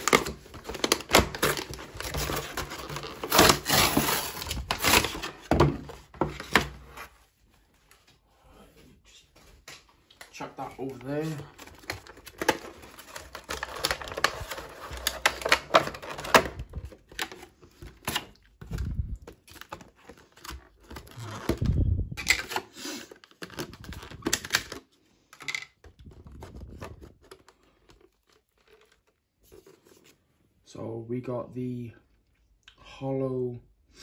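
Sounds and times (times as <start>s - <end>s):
cardboard packaging torn open: 0.0s - 6.6s, 11.2s - 24.9s, 25.9s - 29.8s.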